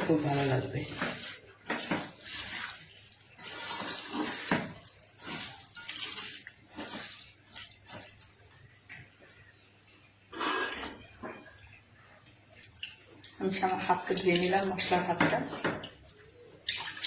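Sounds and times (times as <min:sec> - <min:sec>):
water splashing into sink: 0:00.0 - 0:08.4, 0:12.6 - 0:17.0.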